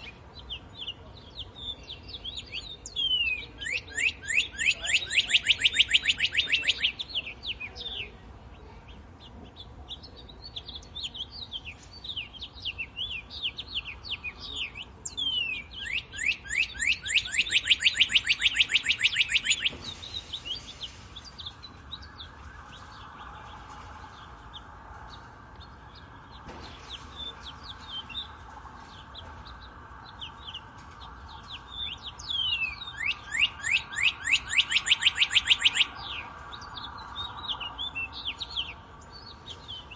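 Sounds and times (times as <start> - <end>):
bird singing fast trill: 0.0 - 8.1, 10.4 - 22.3, 31.5 - 39.9
soft bird chirps: 0.0 - 39.9.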